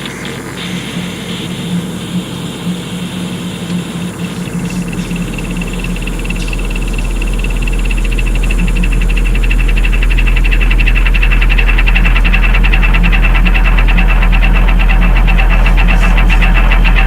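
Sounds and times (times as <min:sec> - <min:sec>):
deep bass drone: 0:00.0 - 0:17.0
high fluttering tone: 0:00.0 - 0:17.0
hiss and hum: 0:00.0 - 0:17.0.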